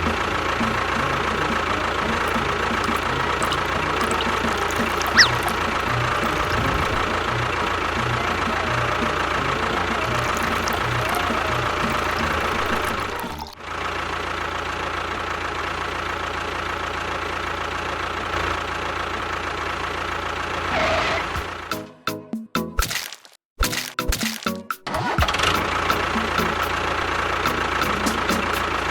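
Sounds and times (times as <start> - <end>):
engine idling with low knock: 0.0 - 4.0.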